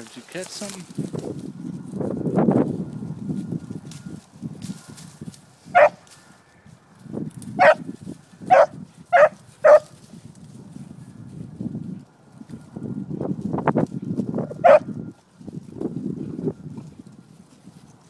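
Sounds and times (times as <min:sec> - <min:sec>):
dog barking: 0:05.7 - 0:06.0, 0:07.6 - 0:07.8, 0:08.5 - 0:09.9, 0:14.5 - 0:14.9.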